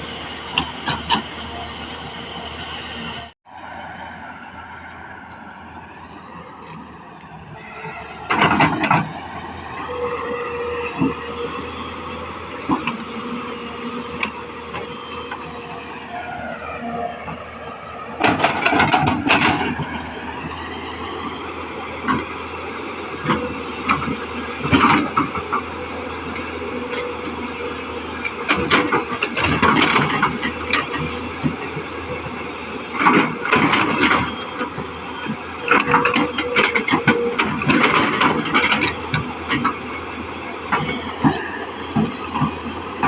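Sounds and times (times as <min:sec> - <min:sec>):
excavator diesel engine working: 0:00.0 - 0:43.0
clanking and knocking: 0:08.3 - 0:09.2, 0:18.2 - 0:20.6, 0:28.4 - 0:32.4, 0:33.0 - 0:39.9.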